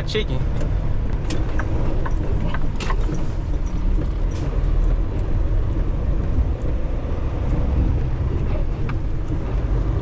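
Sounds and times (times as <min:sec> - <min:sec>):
truck diesel engine rumbling: 0:00.0 - 0:10.0.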